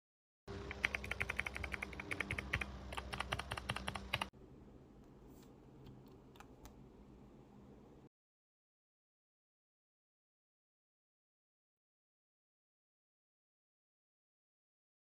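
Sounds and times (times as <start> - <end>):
mechanical keyboard typing: 0.7 - 4.3.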